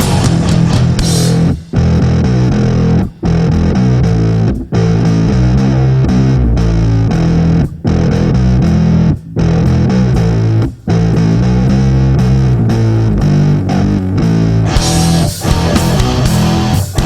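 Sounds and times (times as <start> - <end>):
bass guitar: 0.0 - 17.0
distorted electric guitar riff: 0.0 - 17.0
metal band playing: 0.0 - 17.0.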